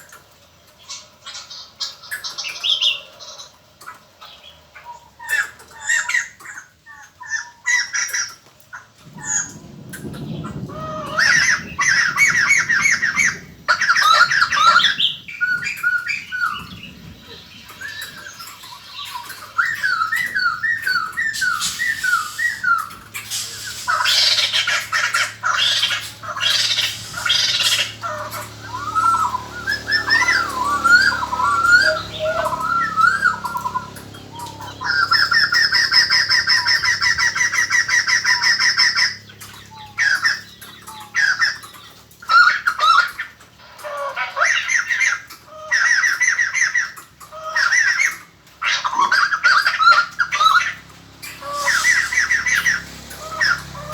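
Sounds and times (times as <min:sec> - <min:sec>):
rapid rattling bird trill: 0:00.0 - 0:53.9
harsh cackling bird chatter: 0:00.6 - 0:53.9
bird whistled notes: 0:11.1 - 0:39.1, 0:51.3 - 0:53.9.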